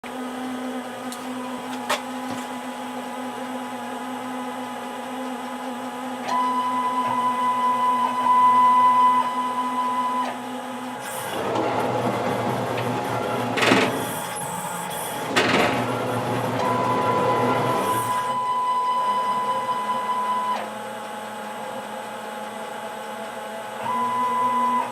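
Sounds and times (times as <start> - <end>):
tube cutter humming: 0.0 - 24.9
loud rough machine noise: 10.4 - 18.6.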